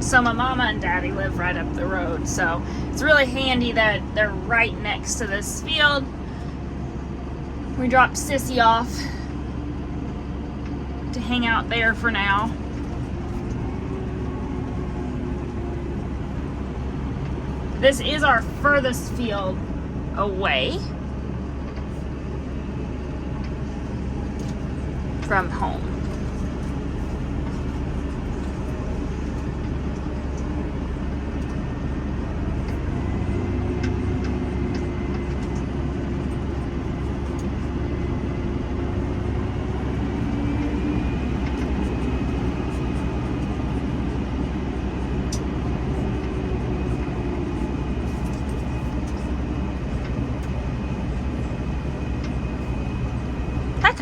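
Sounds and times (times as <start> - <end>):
faint engine whine: 0.0 - 54.0
tractor engine drone: 0.0 - 54.0.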